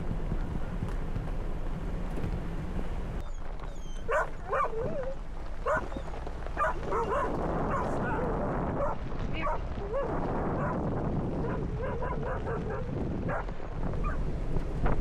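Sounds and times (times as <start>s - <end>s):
low vehicle rumble: 0.0s - 15.0s
dog whining: 3.2s - 10.7s.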